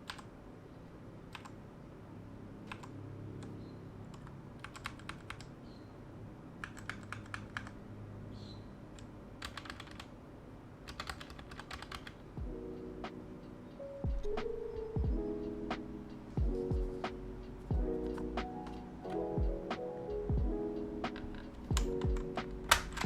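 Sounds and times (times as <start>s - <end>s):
mechanical keyboard keys clicking: 0.0s - 0.3s, 1.3s - 1.6s, 2.6s - 5.6s, 6.6s - 7.8s, 9.0s - 10.1s, 10.9s - 12.4s, 17.9s - 19.8s, 20.8s - 23.0s.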